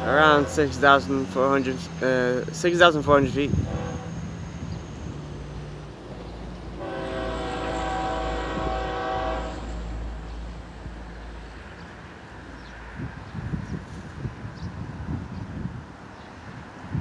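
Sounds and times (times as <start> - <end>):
locomotive air horn: 0.0 - 1.0, 3.5 - 4.4, 6.8 - 10.3
diesel train rumbling past: 0.0 - 17.0.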